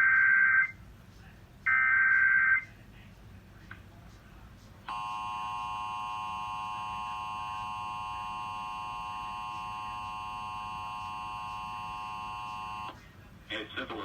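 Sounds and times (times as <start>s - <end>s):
two-tone alarm tone: 4.9s - 12.9s.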